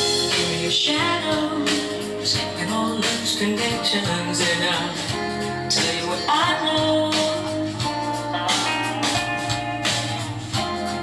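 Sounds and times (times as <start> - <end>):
person singing: 0.0 - 9.2
recorded song with guitar: 0.0 - 11.0.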